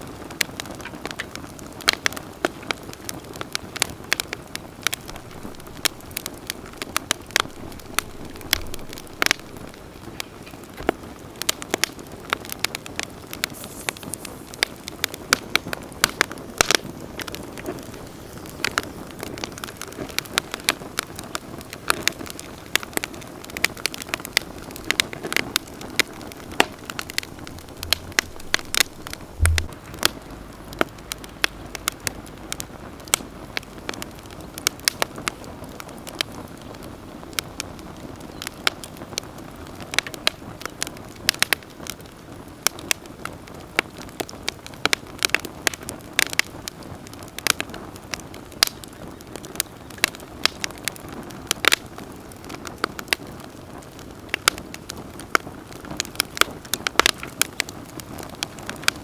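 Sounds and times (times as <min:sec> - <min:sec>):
campfire crackling: 0:00.0 - 0:59.0
fire hissing: 0:01.8 - 0:36.4.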